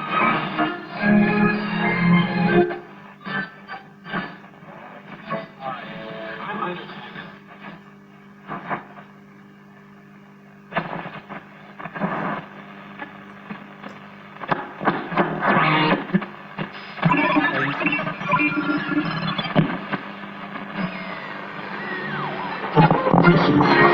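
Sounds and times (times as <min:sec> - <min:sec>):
radio static: 0:02.9 - 0:07.8, 0:08.4 - 0:09.3, 0:10.3 - 0:23.9
radio low hum: 0:02.9 - 0:23.9
snatches of broadcast sound: 0:10.7 - 0:23.9.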